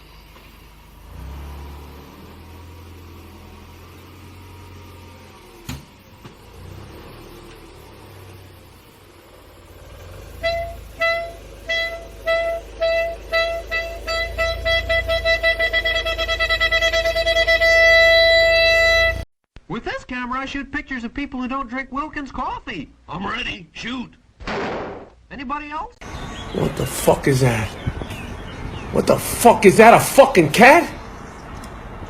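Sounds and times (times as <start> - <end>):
low engine rumble: 0.0 - 19.3.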